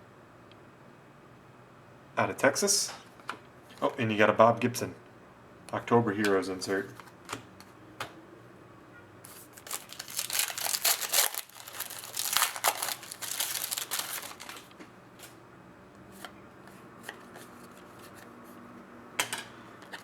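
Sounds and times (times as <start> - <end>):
plastic wrapper crinkling and tearing: 9.3 - 14.8.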